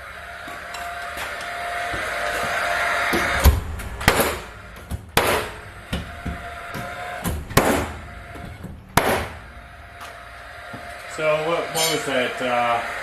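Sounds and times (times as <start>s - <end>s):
nail gun shots into wood: 9.0s - 9.4s.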